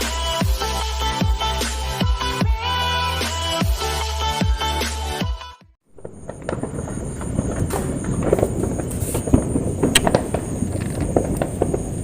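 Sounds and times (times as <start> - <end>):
fireworks cracking and popping: 5.8 - 12.0
rumble of explosions: 5.9 - 12.0.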